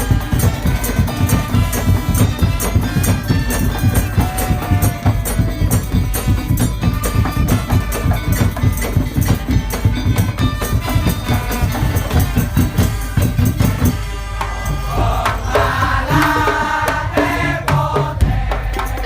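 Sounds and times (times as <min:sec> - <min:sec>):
fast dense drumming: 0:00.0 - 0:19.0.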